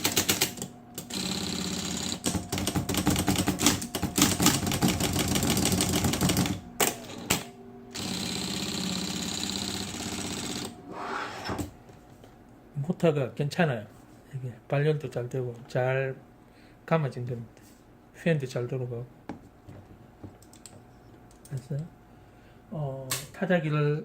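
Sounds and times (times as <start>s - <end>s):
rapid typewriter key strikes: 0.0s - 1.2s, 2.1s - 6.6s
electric typewriter motor hum: 0.0s - 11.8s.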